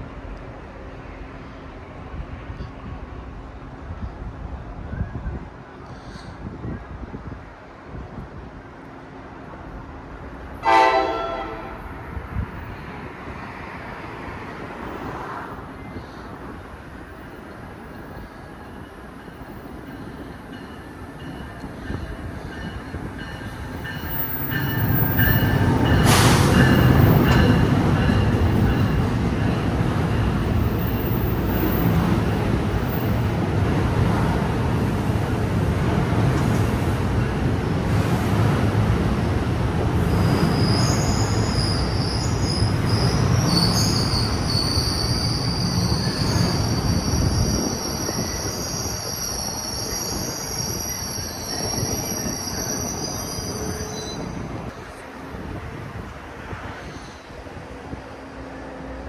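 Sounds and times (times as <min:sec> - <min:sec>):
train rumble and wheel noise: 0:00.0 - 0:59.0
train horn blast: 0:10.6 - 0:12.0.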